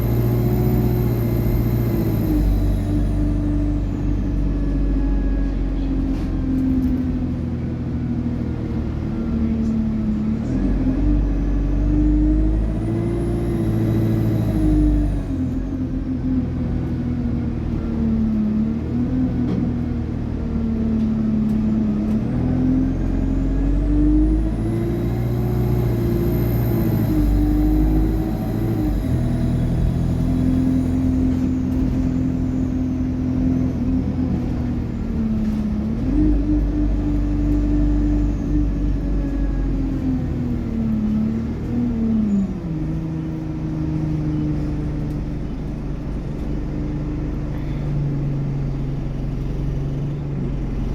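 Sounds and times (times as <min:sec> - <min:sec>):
high turbocharger whine: 0:00.0 - 0:05.4, 0:11.2 - 0:16.0, 0:22.6 - 0:43.1
bus engine running: 0:00.0 - 0:50.9.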